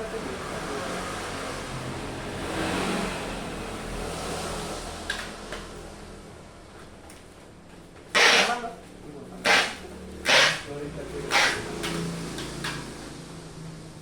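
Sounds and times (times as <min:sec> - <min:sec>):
vehicle passing: 0:00.0 - 0:06.6.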